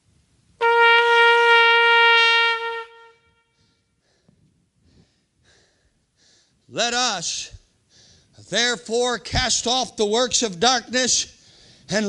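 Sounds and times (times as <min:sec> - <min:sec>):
ram's horn blast: 0:00.6 - 0:03.7.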